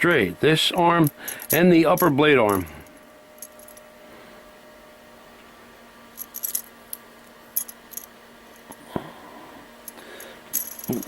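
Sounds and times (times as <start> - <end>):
metallic clinks and rattles: 1.0 - 3.8, 6.2 - 7.0, 7.6 - 8.8, 9.8 - 11.0.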